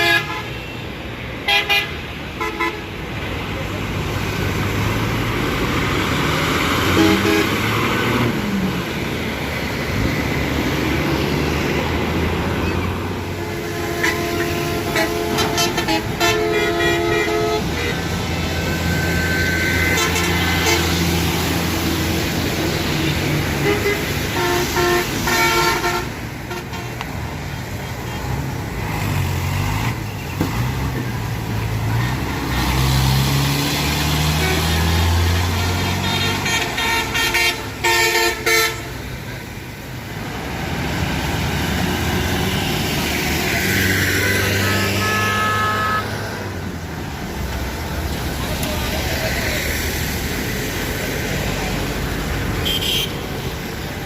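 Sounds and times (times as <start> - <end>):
vehicle horns honking: 0.0 - 0.8, 1.4 - 2.9, 6.9 - 8.1, 12.6 - 21.1, 23.5 - 27.0, 34.3 - 39.0, 43.9 - 46.2, 52.6 - 53.5.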